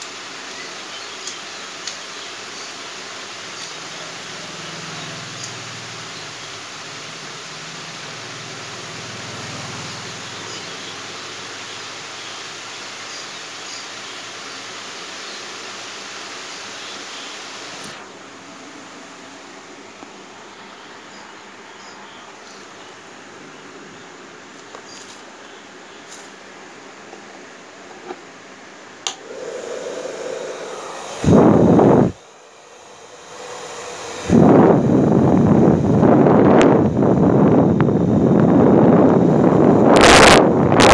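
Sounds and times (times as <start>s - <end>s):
hair dryer running: 15.6s - 18.1s, 29.1s - 40.9s
hair dryer switch clicks: 29.0s - 29.4s
rush of blown air: 29.2s - 40.9s.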